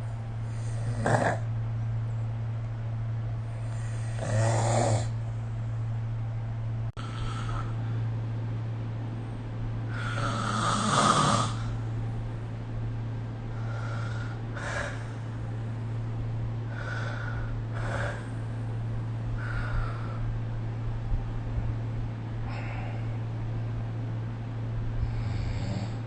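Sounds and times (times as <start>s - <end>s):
steady low hum: 0.0s - 26.0s
person snoring: 0.5s - 1.5s, 3.5s - 5.2s, 7.0s - 7.8s, 9.9s - 11.8s, 16.7s - 18.4s, 25.0s - 26.0s.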